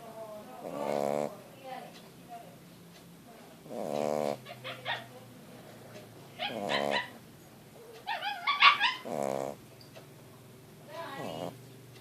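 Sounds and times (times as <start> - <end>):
pet snoring: 0.6 - 1.4, 3.6 - 5.1, 6.4 - 7.2, 8.8 - 9.6, 11.0 - 11.7.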